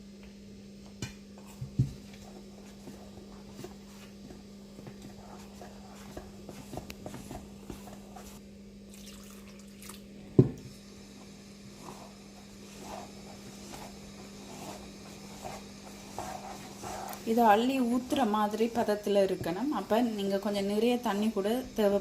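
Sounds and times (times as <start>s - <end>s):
faint steady hum: 0.0s - 22.0s
batter stirring with wet squishing: 1.4s - 8.4s, 11.4s - 22.0s
water pouring into a bowl: 8.9s - 10.1s.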